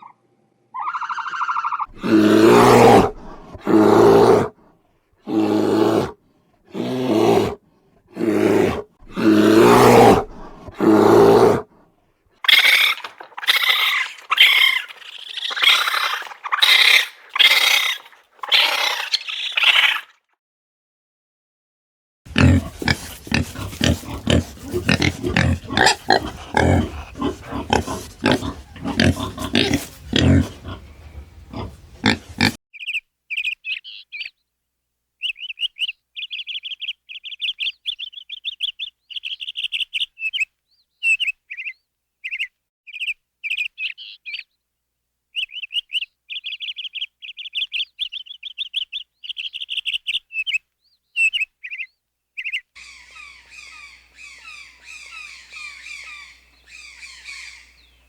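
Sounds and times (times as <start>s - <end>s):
harsh noisy animal calls: 0.8s - 4.5s, 5.3s - 11.7s, 12.4s - 20.2s, 22.3s - 32.6s, 52.8s - 57.8s.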